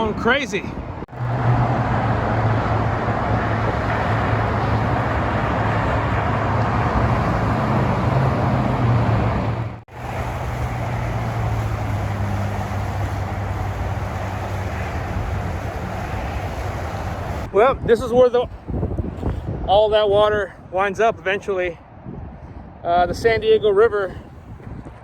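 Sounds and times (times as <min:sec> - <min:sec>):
car road and engine noise: 0:00.0 - 0:19.6.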